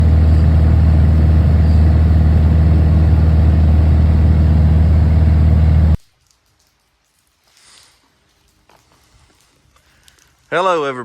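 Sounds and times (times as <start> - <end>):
engine running with low hum: 0.0 - 6.0.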